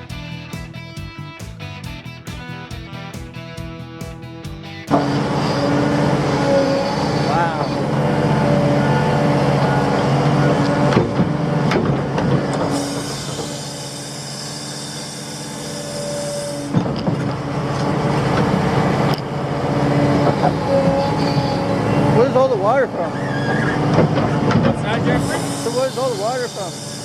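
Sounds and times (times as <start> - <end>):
excavator diesel engine running: 0.0 - 27.0
hiss: 12.7 - 16.8, 25.1 - 27.0.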